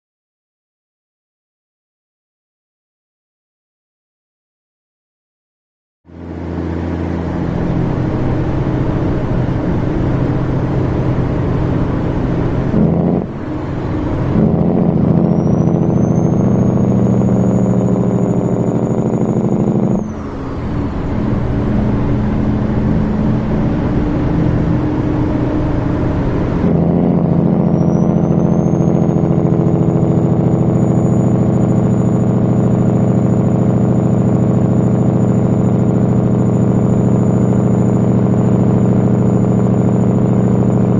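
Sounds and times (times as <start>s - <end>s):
diesel truck engine: 6.1s - 40.9s
high whistle: 15.2s - 19.2s, 27.6s - 29.2s, 30.4s - 33.5s.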